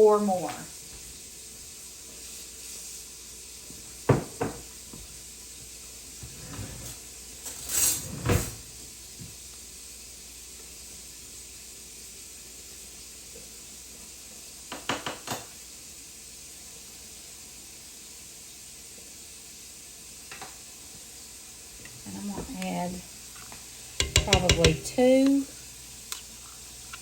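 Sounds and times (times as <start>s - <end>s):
faint steady hiss: 0.0s - 27.0s
kitchen items clattering: 6.3s - 8.6s, 24.0s - 25.5s
knocks: 24.0s - 25.0s.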